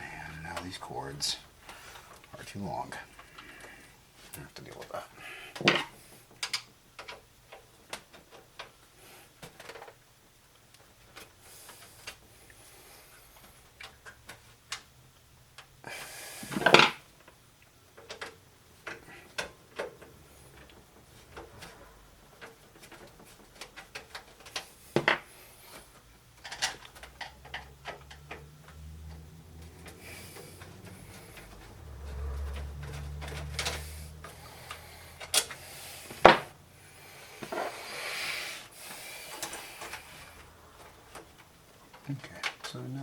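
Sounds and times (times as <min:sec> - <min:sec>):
small clicks taps and rubbing: 0:22.4 - 0:35.6.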